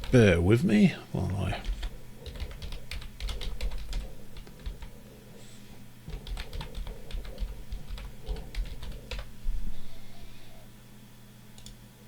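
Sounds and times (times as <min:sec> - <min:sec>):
computer keyboard typing: 0:01.6 - 0:05.0, 0:06.1 - 0:09.3.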